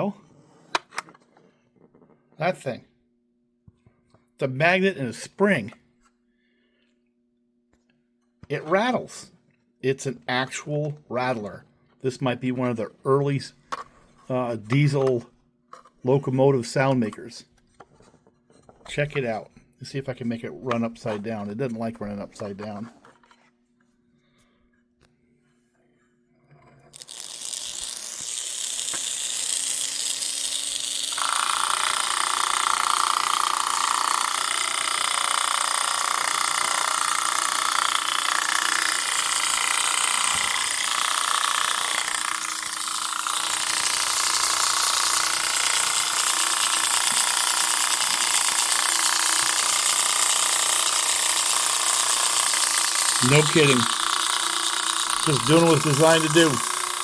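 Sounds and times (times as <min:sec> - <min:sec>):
toy locomotive rattler buzzing: 0:26.9 - 0:57.0.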